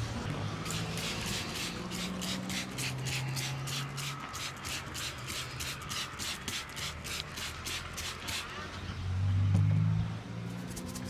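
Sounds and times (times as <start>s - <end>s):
hands rubbing hair and scalp: 10.5s - 11.0s.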